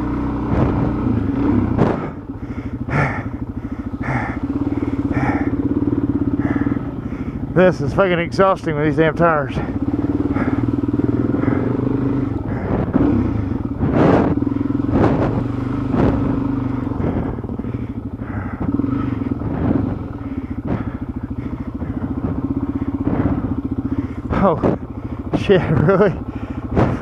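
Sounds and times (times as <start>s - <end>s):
motorcycle engine running: 0.0s - 27.0s
sharp knocks and clatters: 1.7s - 2.2s, 26.7s - 27.0s.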